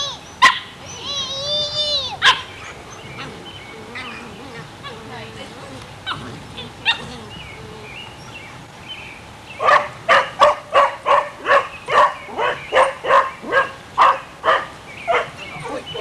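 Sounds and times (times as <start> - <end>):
puppy barking rapidly: 0.0 - 1.4, 2.0 - 5.0, 9.6 - 16.0.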